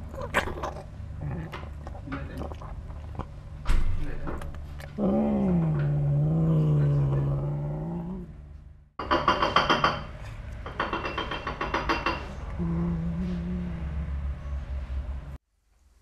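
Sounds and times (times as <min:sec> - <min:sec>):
cat growling: 0:00.0 - 0:03.3, 0:04.8 - 0:08.4, 0:12.4 - 0:14.5
clicking chewing sounds: 0:00.2 - 0:06.0.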